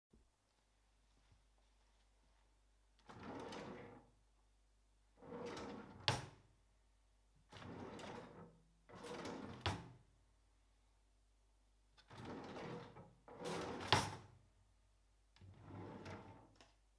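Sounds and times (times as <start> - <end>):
drawer sliding rumble: 5.2 - 6.4, 7.5 - 9.9, 12.1 - 14.3, 15.4 - 16.6.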